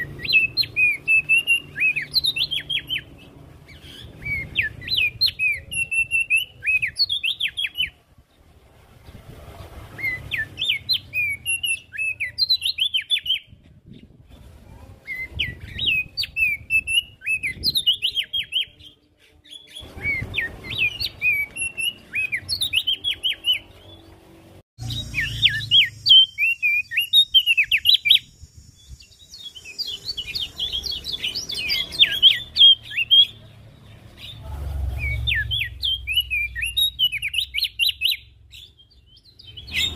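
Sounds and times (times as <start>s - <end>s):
faint high bird chirps: 0.0s - 8.0s, 10.0s - 24.1s, 24.8s - 33.5s, 34.2s - 39.9s
bird chattering chirps: 35.0s - 39.9s.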